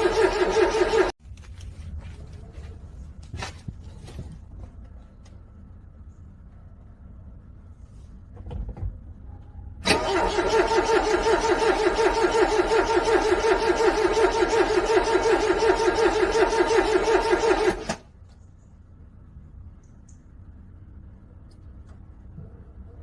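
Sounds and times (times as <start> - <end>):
car engine cranking: 0.0 - 1.2, 9.8 - 18.1.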